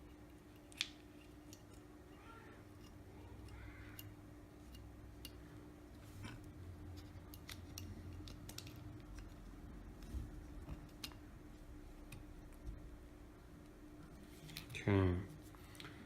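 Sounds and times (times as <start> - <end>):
small phone parts clicking and tapping: 0.0 - 1.9, 2.6 - 5.5, 6.2 - 11.3, 11.9 - 12.8.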